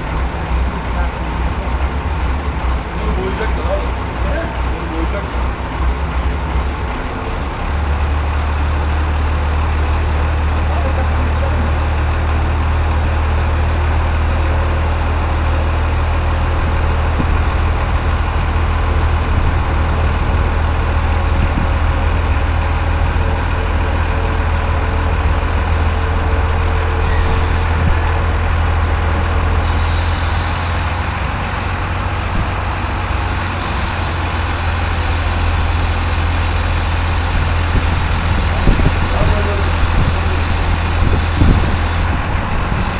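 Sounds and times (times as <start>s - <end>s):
washing machine running: 0.0s - 42.9s
short hissing bursts: 29.6s - 31.0s.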